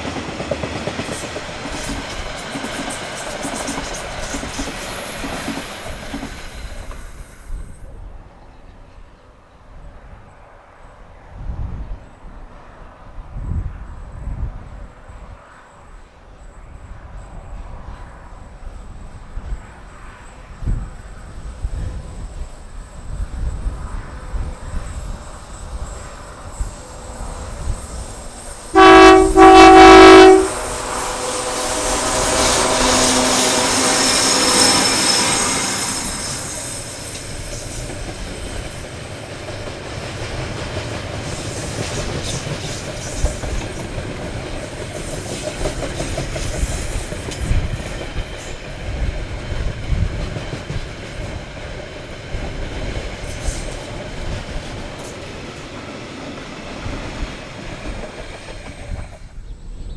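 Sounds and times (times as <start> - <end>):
train rumbling past: 0.0 - 59.9
train horn blasts: 28.7 - 36.3.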